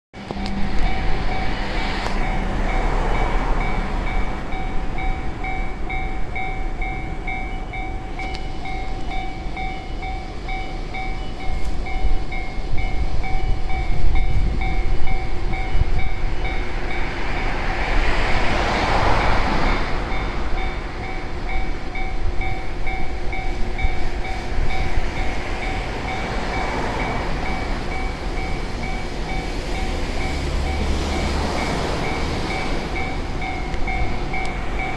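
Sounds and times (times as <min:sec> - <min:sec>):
train passing: 0:00.1 - 0:34.9
level-crossing warning bell: 0:00.2 - 0:34.9.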